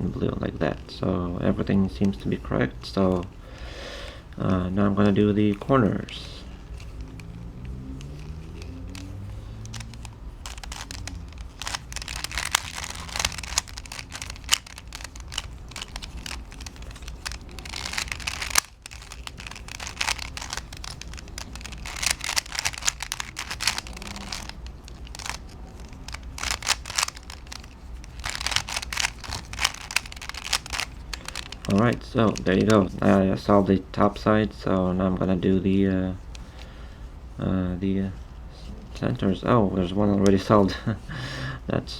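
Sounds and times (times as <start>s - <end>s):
low steady hum: 0.0s - 41.9s
puzzle cube clicking: 4.4s - 33.2s.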